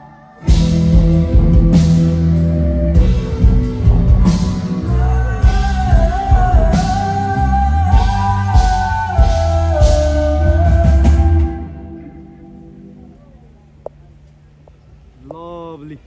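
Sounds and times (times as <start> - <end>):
rock music: 0.4 - 13.0.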